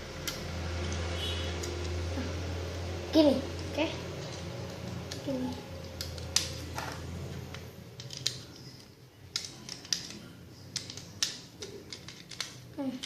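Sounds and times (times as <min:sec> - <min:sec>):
plastic toy parts clicking: 0:03.5 - 0:13.0.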